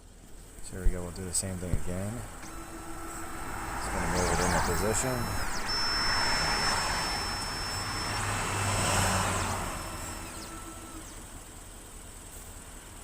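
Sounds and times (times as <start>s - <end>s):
thin high whine: 0.4s - 11.4s
key cutting machine motors whirring: 1.7s - 11.3s.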